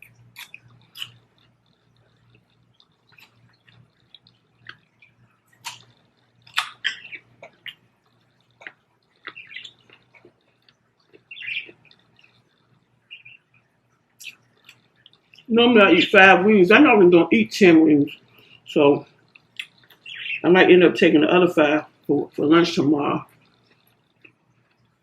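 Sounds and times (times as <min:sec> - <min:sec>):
pet birds chirping: 0:00.0 - 0:16.3, 0:18.1 - 0:21.1.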